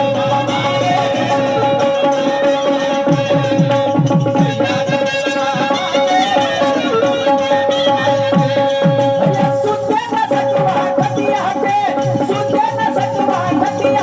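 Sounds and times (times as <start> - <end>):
harmonium holding notes: 0.0 - 14.0.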